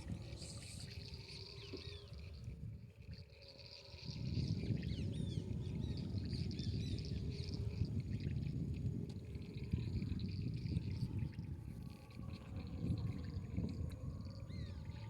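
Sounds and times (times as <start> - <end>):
insects buzzing: 0.0 - 7.9.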